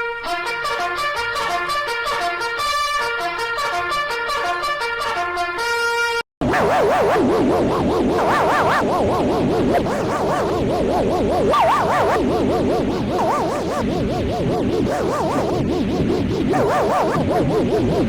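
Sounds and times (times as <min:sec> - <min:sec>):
warbling electronic alarm tones: 0:06.4 - 0:18.0.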